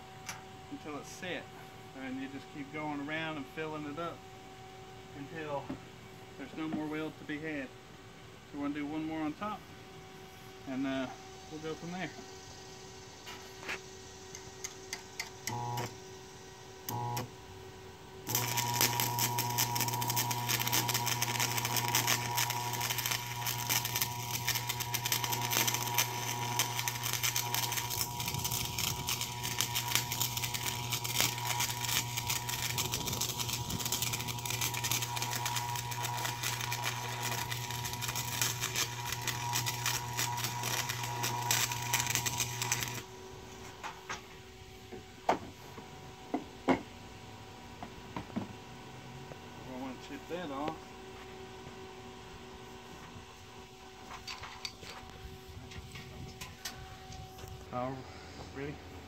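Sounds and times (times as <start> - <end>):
welder humming: 10.2 - 45.0
welding arc crackling: 16.8 - 17.4, 18.2 - 43.1.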